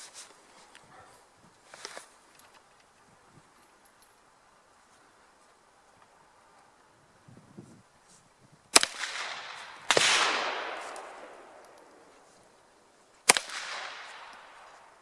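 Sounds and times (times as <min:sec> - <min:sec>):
gunshots with echo: 0:08.8 - 0:12.1, 0:13.3 - 0:14.7.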